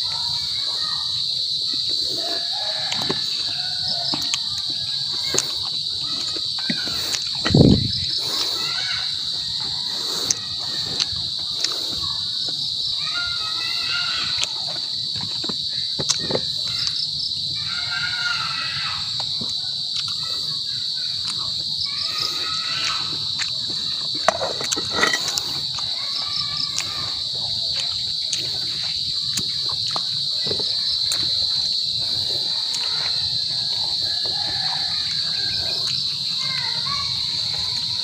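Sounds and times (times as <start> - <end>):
chorus of insects: 0.0 - 38.0
faint voices: 0.0 - 38.0.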